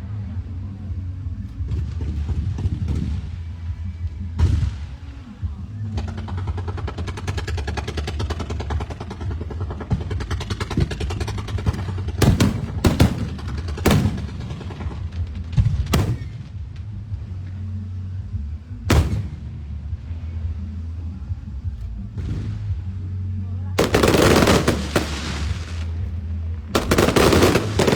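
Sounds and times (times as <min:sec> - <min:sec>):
steady low rumble: 0:00.0 - 0:27.9
firework shells booming: 0:08.7 - 0:16.6, 0:23.8 - 0:25.9, 0:26.8 - 0:27.9
fireworks crackling: 0:23.8 - 0:26.0, 0:26.8 - 0:27.9.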